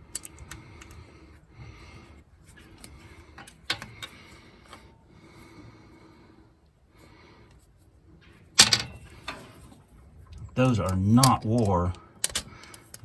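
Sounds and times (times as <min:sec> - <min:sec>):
metal engine parts clicking: 0:00.0 - 0:01.0, 0:10.3 - 0:13.0
metal clatter: 0:08.6 - 0:09.8.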